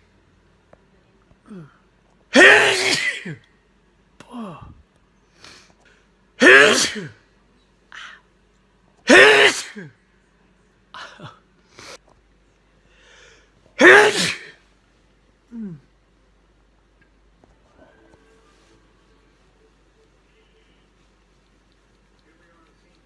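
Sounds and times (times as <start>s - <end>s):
breathy sounds: 1.4s - 1.9s, 15.5s - 15.9s
person sneezing: 2.3s - 3.4s, 6.4s - 7.2s, 9.1s - 9.9s, 13.8s - 14.6s.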